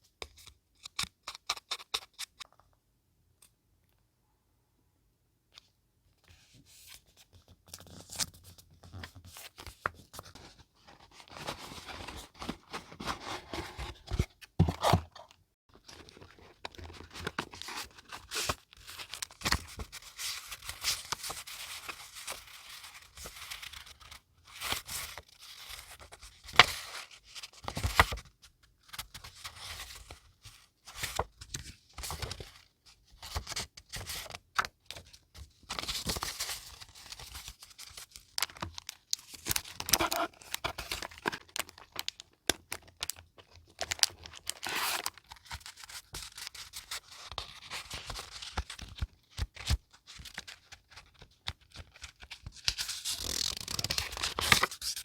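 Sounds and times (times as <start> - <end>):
paper crinkling and tearing: 51.6 - 55.0.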